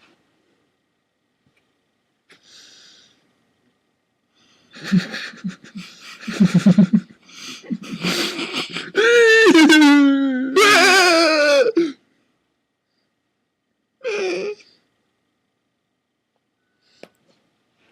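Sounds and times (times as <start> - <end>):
person wheezing and gasping: 4.7 - 12.0.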